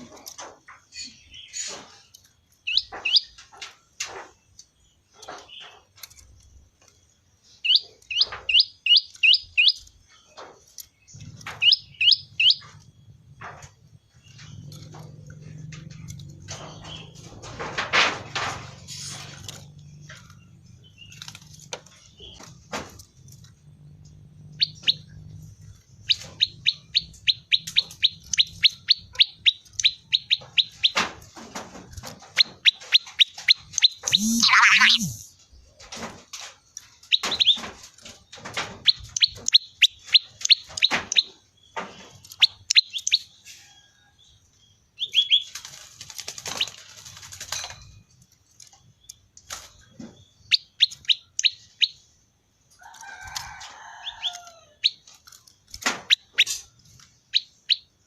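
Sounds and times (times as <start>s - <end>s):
bird singing high chirps: 2.6s - 3.4s, 7.4s - 9.9s, 11.0s - 12.9s, 24.2s - 31.0s, 32.4s - 35.4s
bird singing sharp rising notes: 33.8s - 35.3s.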